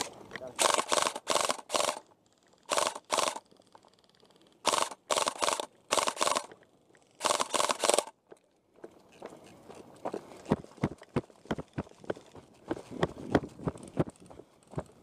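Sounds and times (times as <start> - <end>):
airsoft rifle firing bursts: 0.6 - 2.0, 2.7 - 3.4, 4.6 - 6.5, 7.2 - 8.2.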